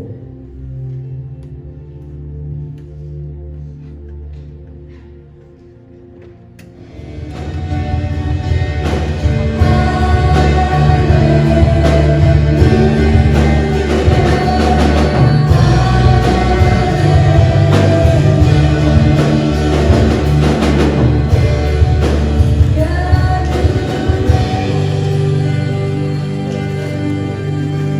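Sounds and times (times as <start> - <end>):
worship band music: 0.0 - 27.9
heavy steady bass: 6.8 - 27.9
person singing: 6.9 - 27.9.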